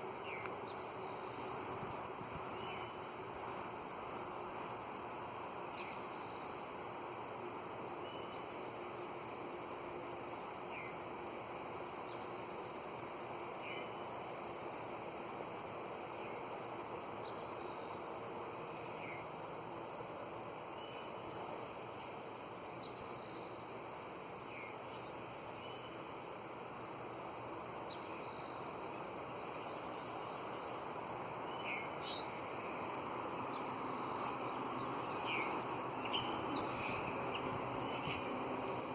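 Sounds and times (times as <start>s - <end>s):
insects trilling: 0.0s - 38.9s
low background hum: 26.8s - 38.9s.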